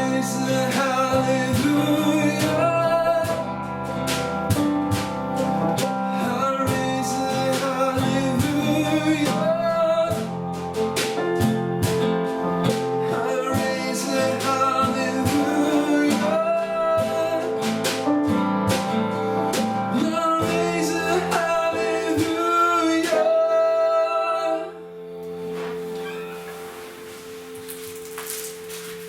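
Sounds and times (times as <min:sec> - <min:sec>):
person singing: 0:00.0 - 0:04.2, 0:05.8 - 0:10.8, 0:12.6 - 0:18.4, 0:19.4 - 0:25.0
steady beat: 0:00.0 - 0:22.5
guitar: 0:00.0 - 0:29.0.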